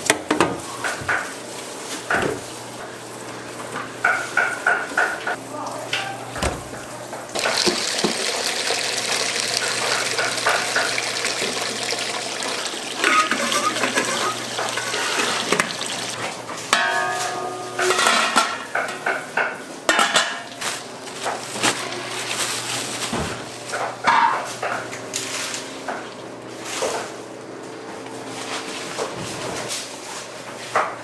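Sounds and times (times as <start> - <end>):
pots and dishes clanking: 0.0 - 27.2
cooking hiss: 2.5 - 16.2
scraping squeal: 13.0 - 15.5.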